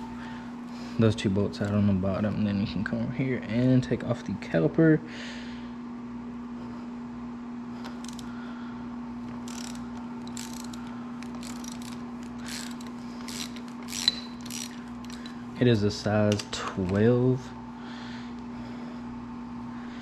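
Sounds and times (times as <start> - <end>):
steady low hum: 0.0 - 20.0
socket wrench ratcheting: 7.8 - 8.3, 9.3 - 15.4.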